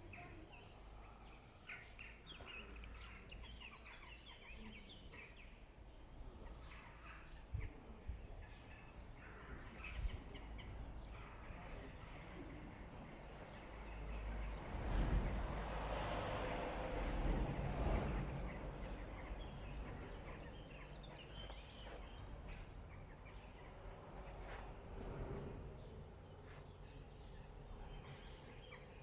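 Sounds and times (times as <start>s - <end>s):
small birds chirping: 0.0s - 29.0s
wind rumble on microphone: 7.4s - 28.7s.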